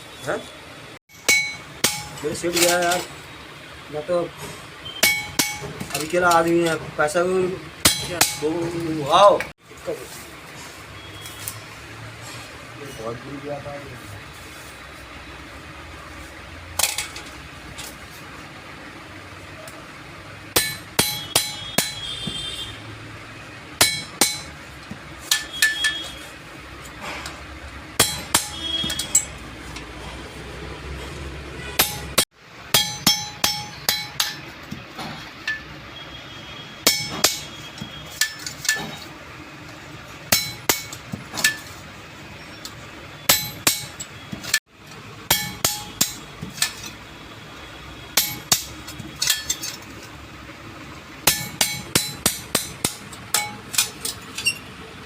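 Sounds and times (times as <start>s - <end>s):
hammer striking metal: 1.1s - 3.1s, 4.8s - 6.8s, 7.8s - 8.8s, 20.5s - 22.7s, 23.8s - 26.2s, 28.0s - 29.5s, 31.6s - 35.7s, 36.8s - 39.1s, 40.3s - 41.7s, 43.2s - 44.6s, 45.2s - 47.0s, 48.1s - 49.8s, 51.2s - 54.6s.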